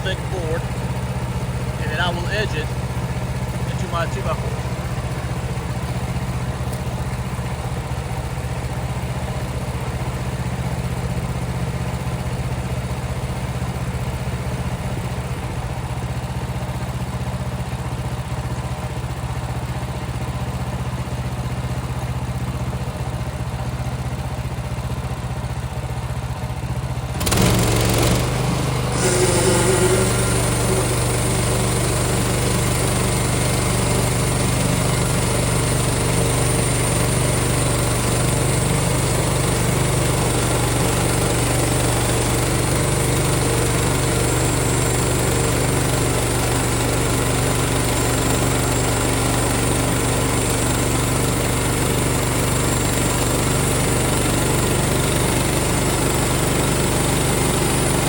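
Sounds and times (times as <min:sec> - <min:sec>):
small gasoline engine running: 0:00.0 - 0:58.0
band blade cutting wood: 0:27.4 - 0:33.0.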